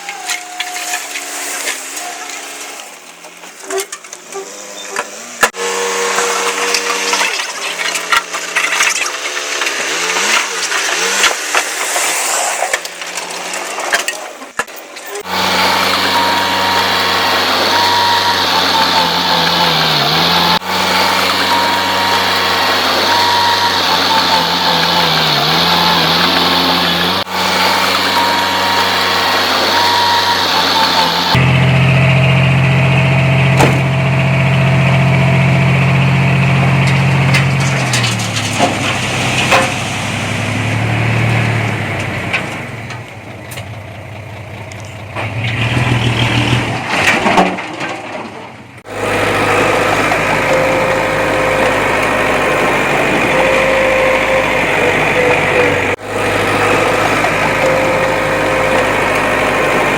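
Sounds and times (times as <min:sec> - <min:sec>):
heavy diesel engine under load: 0:01.0 - 0:59.9
soil and rock crunching: 0:06.2 - 0:31.6, 0:33.4 - 0:43.6.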